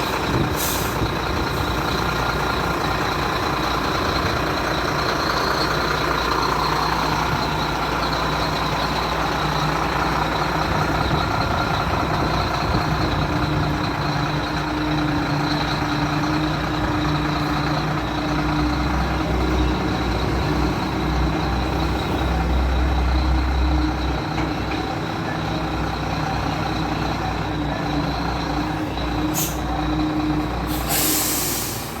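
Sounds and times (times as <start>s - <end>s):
diesel engine rumbling: 0.0s - 32.0s
short hiss: 30.7s - 32.0s.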